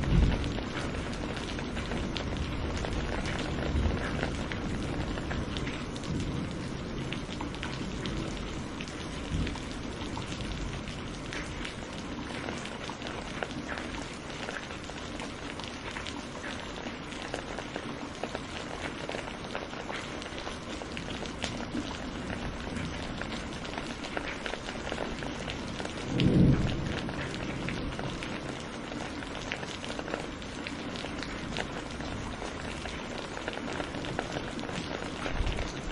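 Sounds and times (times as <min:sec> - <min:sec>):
low thunder rumble: 0:00.0 - 0:11.6, 0:25.2 - 0:29.2
heavy rain falling: 0:00.0 - 0:35.9.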